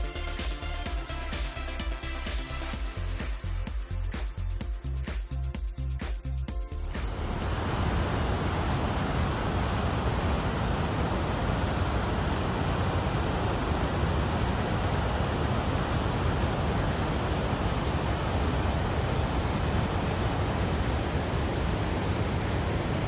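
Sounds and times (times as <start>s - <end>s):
large waterfall roaring: 7.4s - 23.0s.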